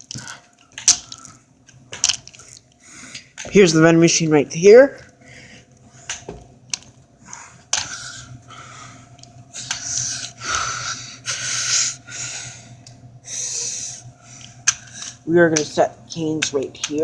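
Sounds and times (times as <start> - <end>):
steady low hum: 0.0 - 17.0
person panting heavily: 7.2 - 12.7.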